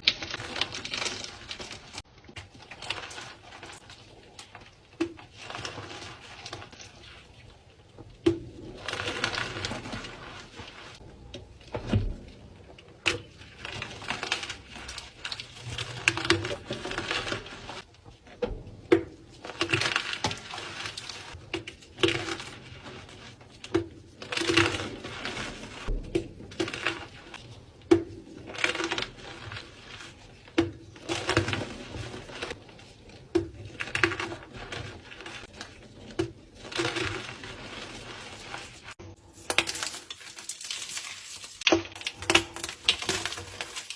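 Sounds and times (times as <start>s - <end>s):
chalk blocks crunching: 28.2s - 43.9s.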